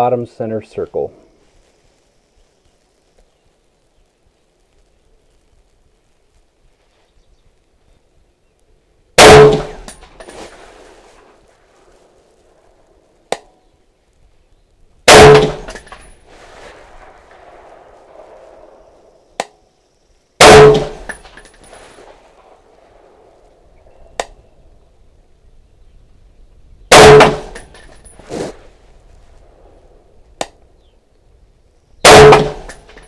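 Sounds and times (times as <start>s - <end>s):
rifle shots: 9.2s - 11.3s, 15.0s - 19.6s, 20.4s - 24.9s, 26.9s - 28.7s, 32.0s - 33.0s.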